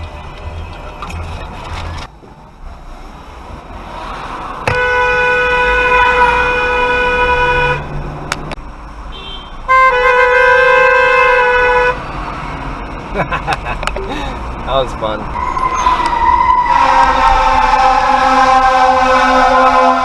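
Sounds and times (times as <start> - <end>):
car horn blasts: 4.7 - 7.9, 9.1 - 12.0, 15.4 - 20.0.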